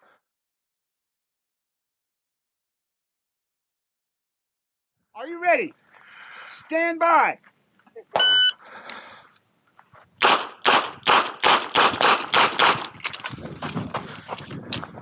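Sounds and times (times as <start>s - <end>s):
shot timer beep: 8.2s - 8.6s
quieter cracks: 10.2s - 13.3s.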